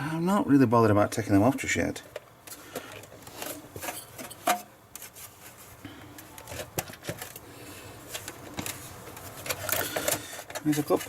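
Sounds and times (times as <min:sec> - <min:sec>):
light clicks and rubbing of parts: 0:08.1 - 0:11.0.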